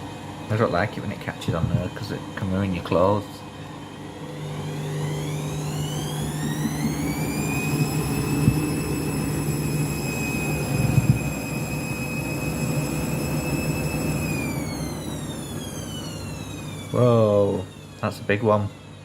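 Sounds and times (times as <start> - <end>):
washing machine spin whine: 0.0 - 19.0
low hum: 3.7 - 14.5.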